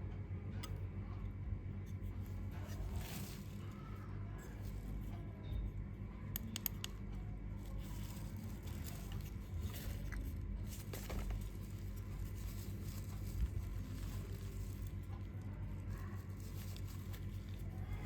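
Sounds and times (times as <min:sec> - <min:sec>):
steady low hum: 0:00.0 - 0:18.0
rustling of packaging: 0:02.0 - 0:05.1, 0:07.5 - 0:18.0.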